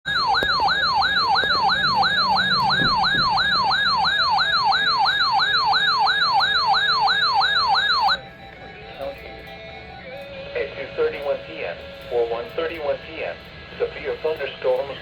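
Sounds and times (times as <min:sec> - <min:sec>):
electronic siren yelping: 0:00.1 - 0:11.6.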